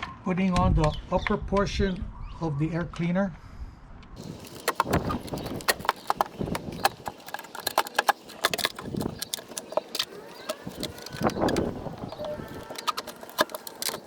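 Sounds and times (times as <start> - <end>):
plastic housing clicking and clattering: 4.2 - 14.0.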